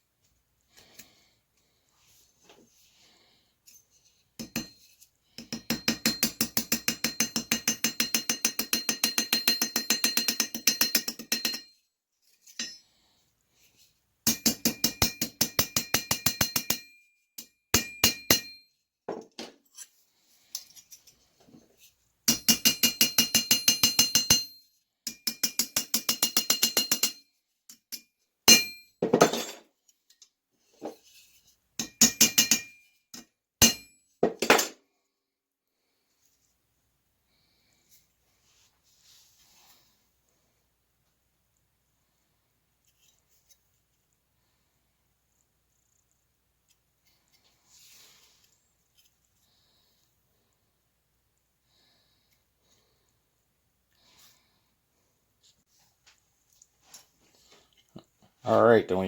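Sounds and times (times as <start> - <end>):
rivet hammer tapping on metal: 4.4 - 4.8, 5.4 - 11.7, 12.5 - 12.8, 14.2 - 19.2, 22.2 - 29.0, 31.8 - 34.7.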